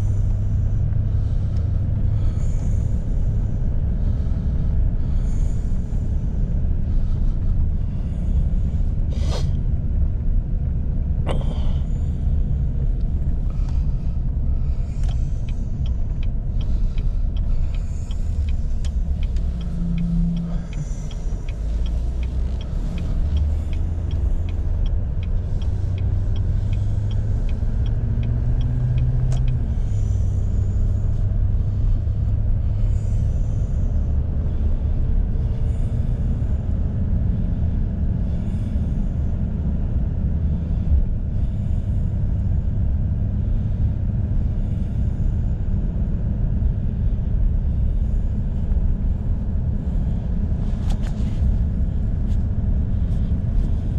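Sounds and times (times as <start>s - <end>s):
truck engine and road rumble: 0.0s - 53.9s
light regular ticking: 12.4s - 35.2s.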